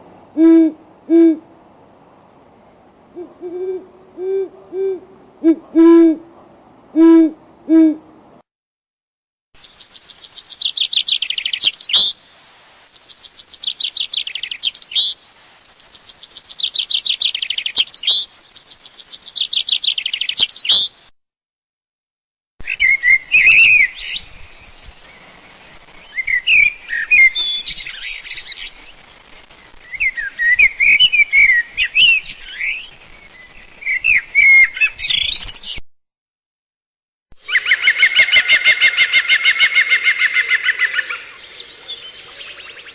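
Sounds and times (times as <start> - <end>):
low hoot: 0.4 - 1.4, 3.1 - 6.3, 7.0 - 8.1
bird chirps and whistles: 9.7 - 12.2, 13.0 - 15.2, 15.9 - 21.1, 22.6 - 25.1, 26.0 - 28.8, 29.8 - 35.8.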